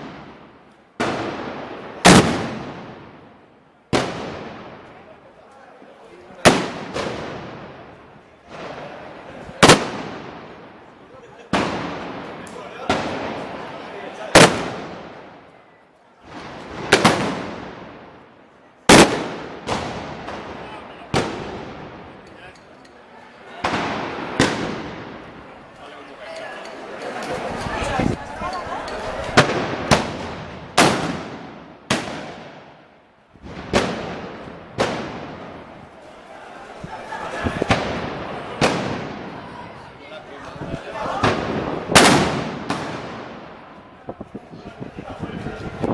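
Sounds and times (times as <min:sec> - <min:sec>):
echoing gunpowder bangs: 0:00.0 - 0:03.2, 0:18.9 - 0:22.1, 0:29.4 - 0:32.8, 0:33.5 - 0:35.6, 0:41.2 - 0:43.6.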